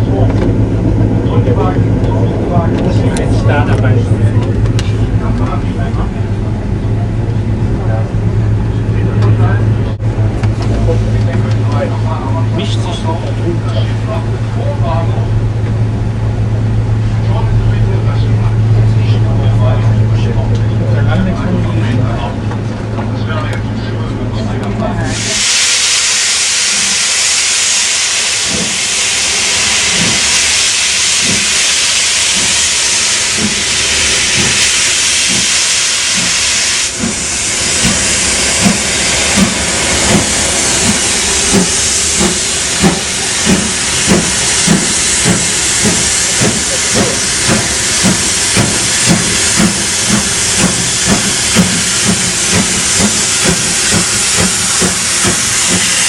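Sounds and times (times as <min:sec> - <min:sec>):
locomotive steam hissing: 0:24.9 - 0:56.0
steady low beat: 0:28.5 - 0:56.0.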